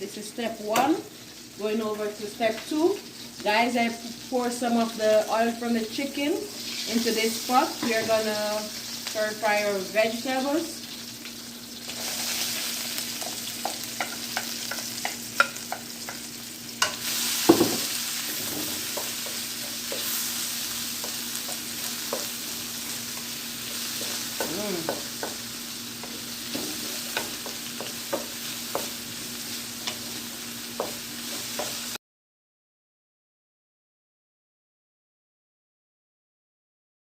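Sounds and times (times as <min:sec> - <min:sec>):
vegetables sizzling in hot oil: 0:00.0 - 0:32.0
utensil scraping a pot: 0:23.2 - 0:28.9.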